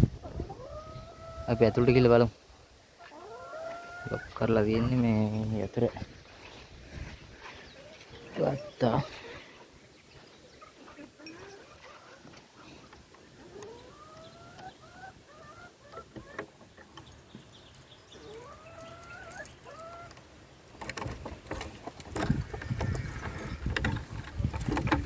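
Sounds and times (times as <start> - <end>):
chickens calling: 0.0 - 25.0
low rustling and bumping: 20.8 - 25.0.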